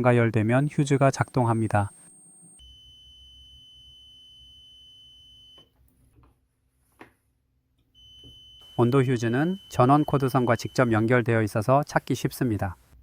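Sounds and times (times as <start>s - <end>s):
multimeter continuity beep: 0.0s - 5.7s, 8.0s - 11.6s.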